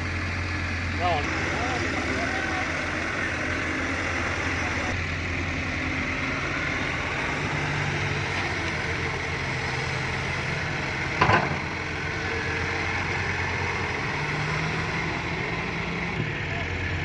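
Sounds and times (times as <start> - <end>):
excavator diesel engine running: 0.0 - 17.0
loud clatter: 11.2 - 11.7.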